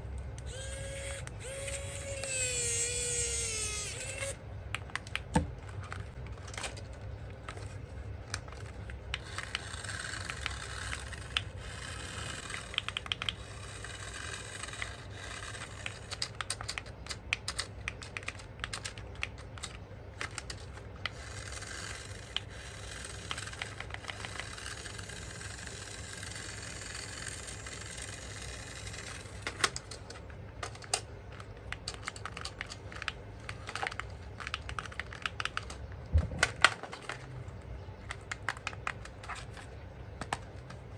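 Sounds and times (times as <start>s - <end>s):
steady low hum: 0.0s - 40.9s
hands handling toy packaging: 0.5s - 11.8s, 29.1s - 40.9s.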